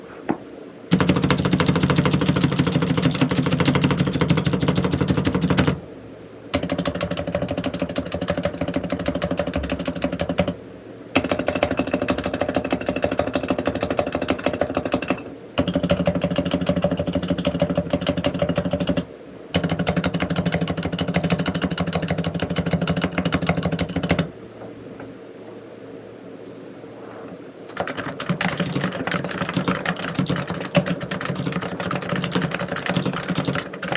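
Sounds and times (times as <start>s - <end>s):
muted keyboard typing: 0.9s - 5.8s, 6.6s - 10.6s, 11.2s - 24.3s, 27.7s - 33.9s.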